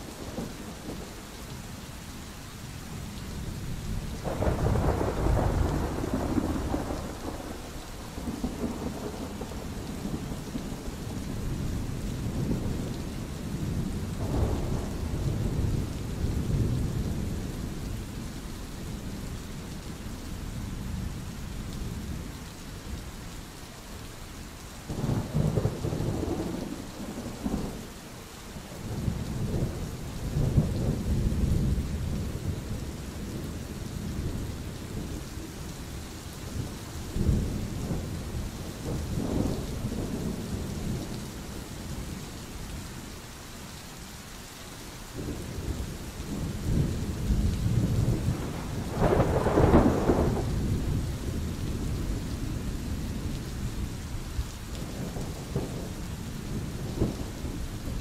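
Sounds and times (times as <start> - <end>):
steady rain: 0.0 - 58.0
thunder rumbling: 3.6 - 17.8, 24.9 - 27.8, 28.7 - 42.1, 45.2 - 58.0.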